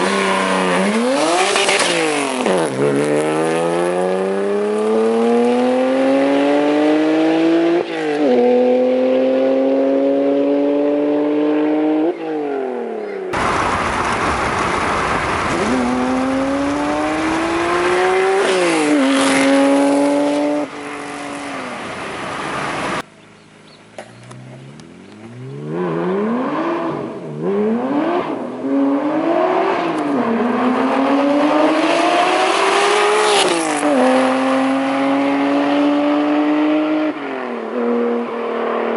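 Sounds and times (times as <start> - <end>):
car engine accelerating through gears: 0.0 - 23.0, 24.1 - 38.9
loud rushing noise: 13.4 - 23.0.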